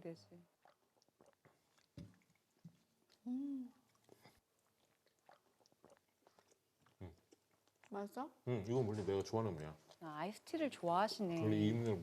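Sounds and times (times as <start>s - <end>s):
faint chewing: 0.5s - 12.0s
person humming: 3.2s - 3.7s.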